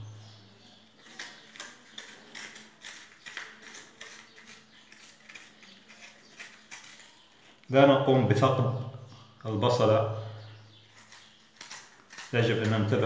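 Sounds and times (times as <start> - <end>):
blade scraping raw onion: 0.8 - 7.6, 10.8 - 13.0.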